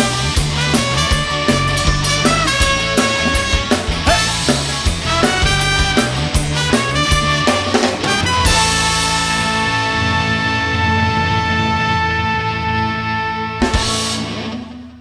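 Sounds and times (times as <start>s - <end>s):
drum kit beat: 0.0s - 10.0s, 13.6s - 14.9s
instrumental band music: 0.0s - 15.0s.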